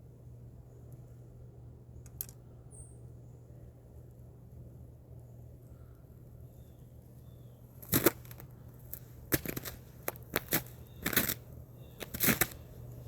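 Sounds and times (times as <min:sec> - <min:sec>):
ice crust crunching underfoot: 0:07.8 - 0:13.0.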